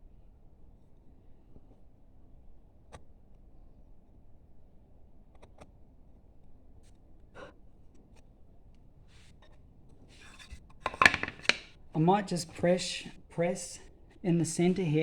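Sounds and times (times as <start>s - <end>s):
chisel ticking and scraping wood: 10.2s - 11.7s.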